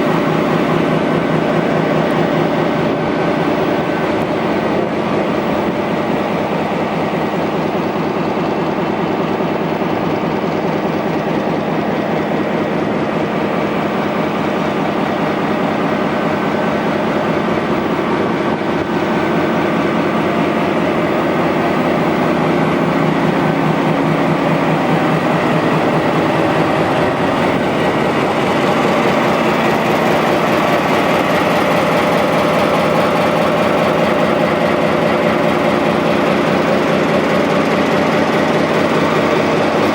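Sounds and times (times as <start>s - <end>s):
diesel locomotive engine running: 0.0s - 39.9s
steady tones: 18.6s - 35.8s.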